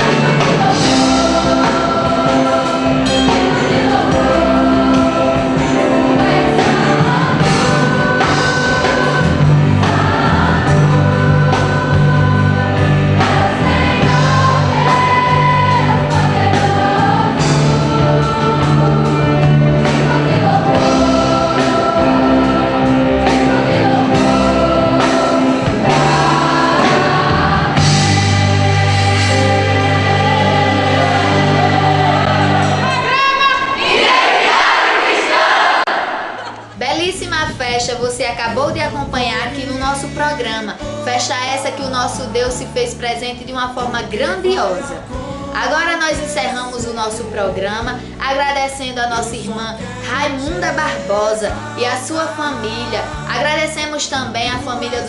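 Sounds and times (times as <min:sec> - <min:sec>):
band with bass and drums: 0:00.0 - 0:32.9
choir singing gospel music: 0:00.0 - 0:55.0.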